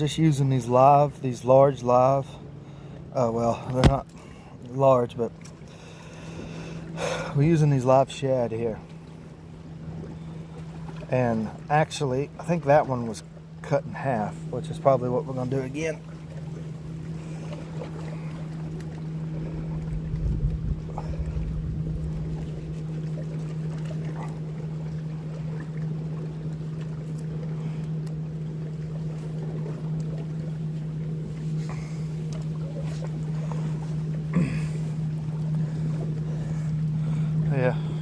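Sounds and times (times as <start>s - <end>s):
boat mechanical hum: 0.0s - 38.0s
wind rumbling on microphone: 19.3s - 22.9s.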